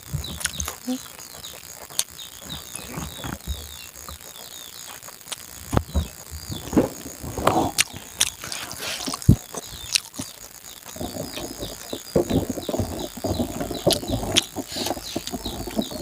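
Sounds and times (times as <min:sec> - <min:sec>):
faint insect or bird chirps: 0:00.0 - 0:16.0
chewing and mouth clicks: 0:00.3 - 0:02.2, 0:06.8 - 0:16.0.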